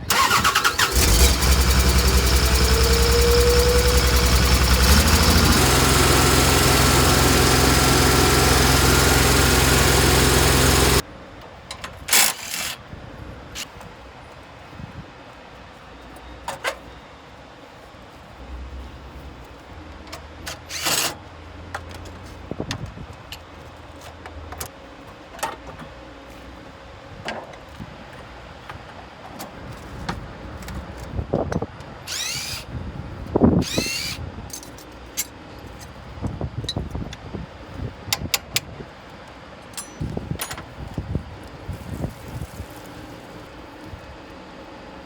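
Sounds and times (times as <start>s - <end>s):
metal tools clinking: 39.7s - 40.7s.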